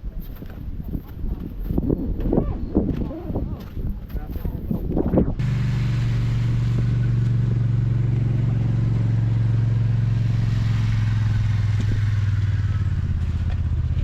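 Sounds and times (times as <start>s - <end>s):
small engine running: 5.4s - 14.0s.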